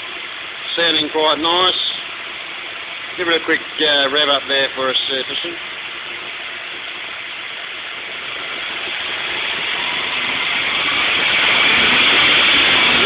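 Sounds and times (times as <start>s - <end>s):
car engine revving: 8.2s - 13.0s.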